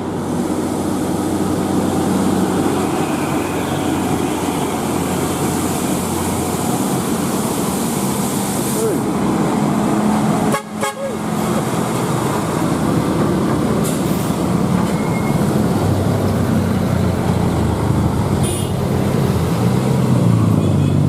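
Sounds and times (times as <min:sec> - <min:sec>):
truck diesel engine running: 0:00.0 - 0:20.6
air hiss: 0:05.4 - 0:09.1.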